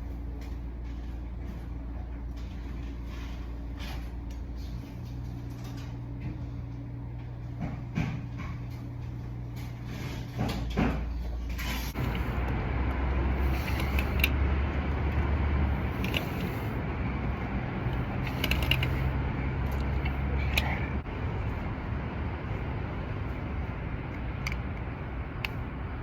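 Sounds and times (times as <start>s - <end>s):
low mechanical hum and rumble: 0.0s - 26.0s
sharp clicks and rattles: 11.9s - 16.8s, 17.8s - 21.1s.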